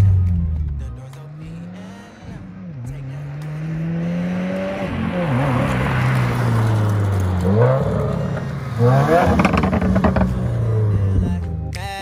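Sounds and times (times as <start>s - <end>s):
car engine running and revving: 0.0s - 12.0s
exhaust crackles and pops: 5.7s - 11.6s.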